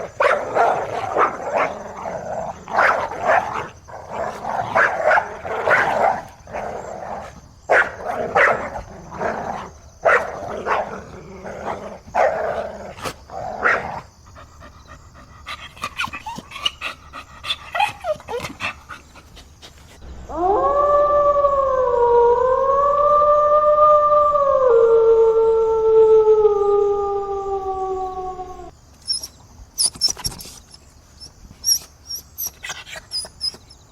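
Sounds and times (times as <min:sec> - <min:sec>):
dog barking: 0:00.0 - 0:02.0, 0:02.6 - 0:03.7, 0:04.6 - 0:06.3, 0:07.7 - 0:08.8, 0:10.0 - 0:11.0, 0:13.6 - 0:14.0
dog yelping: 0:15.6 - 0:18.9, 0:29.1 - 0:33.9
dog howling: 0:20.3 - 0:28.7.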